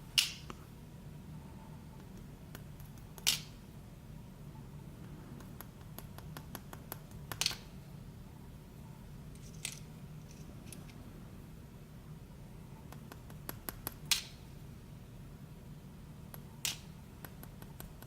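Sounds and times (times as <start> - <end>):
low steady hum: 0.0 - 18.0
metal lock parts clicking: 9.3 - 11.0.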